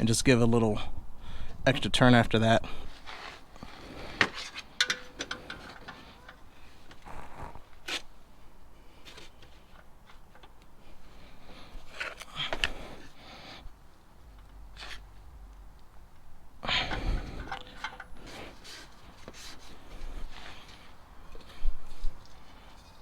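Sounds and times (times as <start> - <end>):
wrench clicking and scraping metal: 4.2 - 6.5, 16.8 - 18.9.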